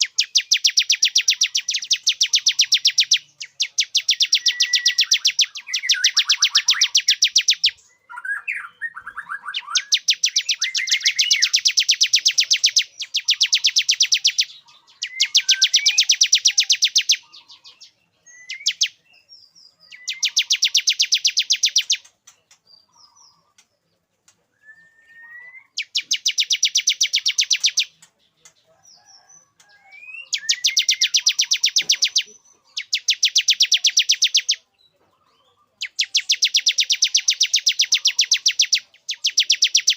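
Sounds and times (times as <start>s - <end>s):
bird single chirps: 24.6s - 39.9s.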